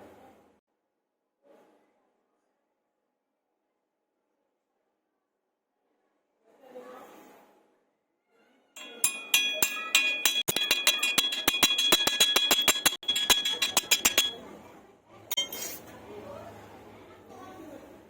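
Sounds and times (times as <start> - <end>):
hammer strikes on steel: 8.8 - 14.4.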